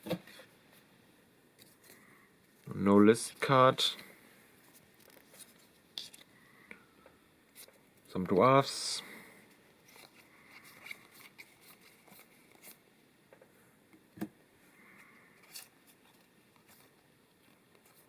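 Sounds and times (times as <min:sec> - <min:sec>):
trading cards rustling: 0:09.8 - 0:12.8.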